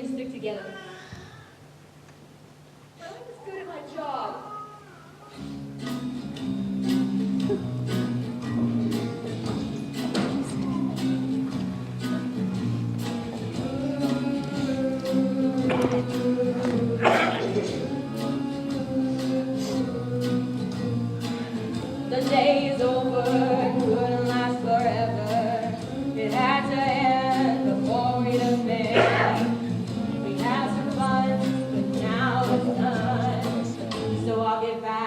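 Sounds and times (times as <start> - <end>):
instrumental accompaniment with beat: 5.2 - 34.3
voices singing: 13.2 - 35.0.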